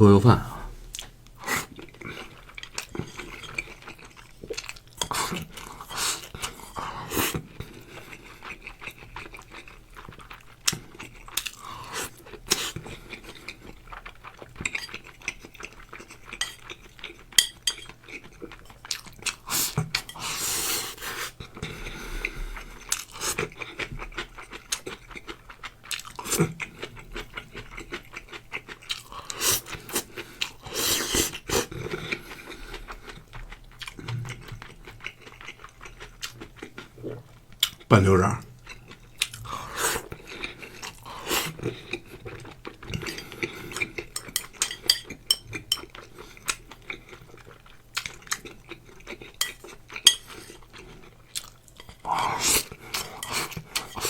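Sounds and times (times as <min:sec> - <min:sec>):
chewing: 0:00.9 - 0:54.0
spoon clicking and scraping bowl: 0:14.6 - 0:15.2, 0:16.3 - 0:18.2, 0:19.9 - 0:20.4, 0:42.8 - 0:46.1, 0:49.2 - 0:50.6, 0:52.6 - 0:54.0.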